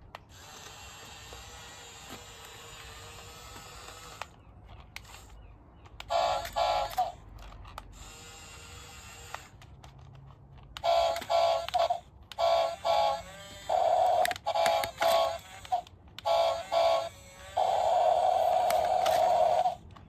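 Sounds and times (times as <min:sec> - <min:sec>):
small electric motor whirring: 0:00.1 - 0:05.4, 0:06.0 - 0:10.0, 0:10.8 - 0:19.8
toy short electronic beeps: 0:10.8 - 0:19.8.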